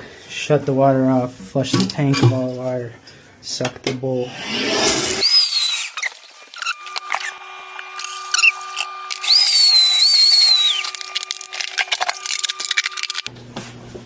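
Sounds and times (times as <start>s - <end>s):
vacuum motor whine: 4.3s - 14.0s
vacuum hose slurping water: 4.5s - 13.3s
high wavering whistle: 5.2s - 11.5s.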